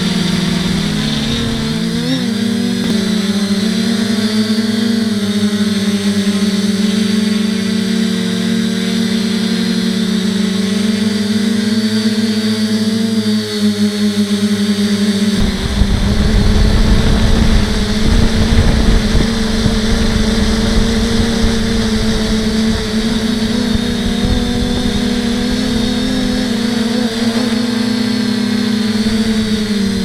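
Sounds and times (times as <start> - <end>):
wind buffeting microphone: 0.0 - 2.2, 15.4 - 30.0
drone motors humming: 0.0 - 30.0.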